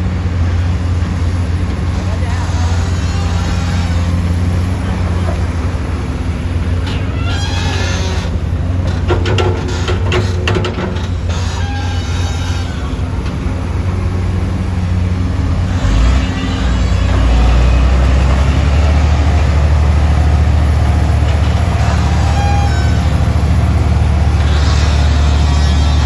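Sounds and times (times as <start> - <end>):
excavator engine rumbling: 0.0 - 26.0.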